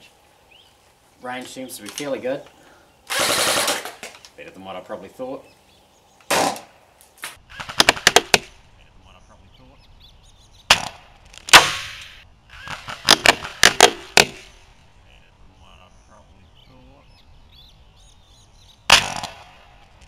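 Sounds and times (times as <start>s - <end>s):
quick sharp rifle shots: 3.1s - 4.2s, 6.3s - 8.6s, 10.7s - 14.6s, 18.9s - 19.7s
grenade launcher gas pops: 10.7s - 14.6s, 18.9s - 19.5s.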